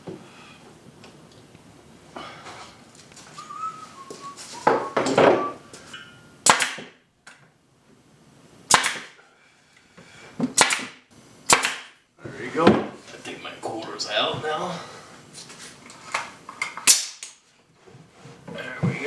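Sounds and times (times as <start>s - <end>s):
sharp clacks of clamps: 10.5s - 11.9s.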